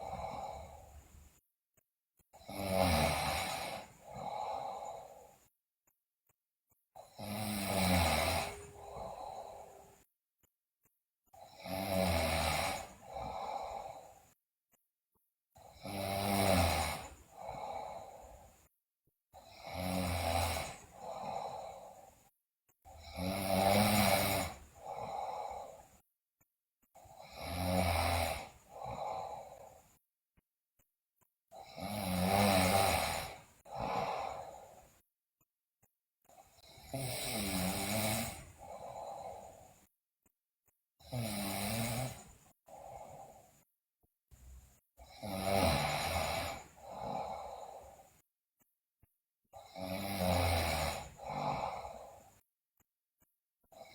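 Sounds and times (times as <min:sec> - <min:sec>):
girl snoring loudly: 0:00.0 - 0:01.0, 0:02.4 - 0:05.4, 0:07.0 - 0:10.1, 0:11.4 - 0:14.3, 0:15.6 - 0:18.5, 0:19.4 - 0:22.3, 0:22.9 - 0:25.9, 0:27.0 - 0:29.8, 0:31.5 - 0:34.9, 0:36.4 - 0:39.8, 0:41.0 - 0:43.4, 0:45.0 - 0:48.2, 0:49.5 - 0:52.4.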